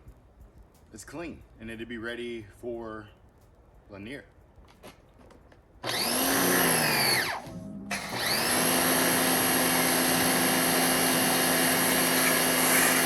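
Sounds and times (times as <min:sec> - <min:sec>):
pressure washer motor whine: 0:05.8 - 0:13.0.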